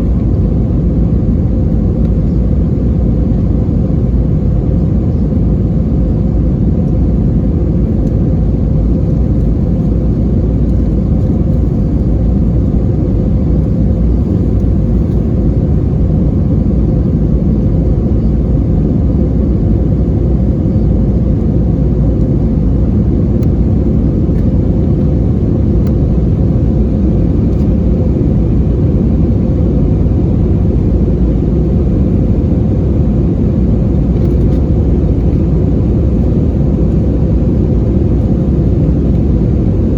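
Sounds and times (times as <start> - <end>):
constant hum: 0.0 - 39.9
jet engine rumble in cabin: 0.0 - 39.9.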